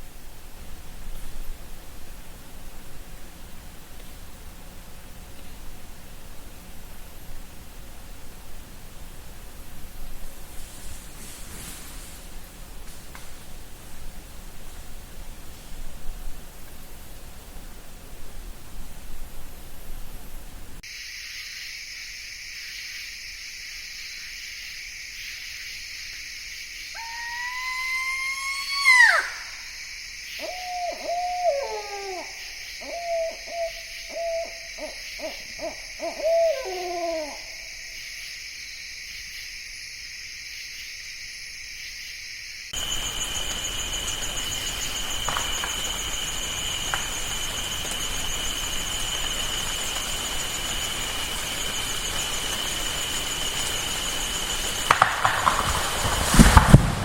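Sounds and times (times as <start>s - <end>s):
steady high hiss: 0.0s - 57.0s
owl calling: 27.0s - 29.8s, 30.4s - 37.7s
owl hooting: 27.0s - 29.8s, 30.4s - 37.7s.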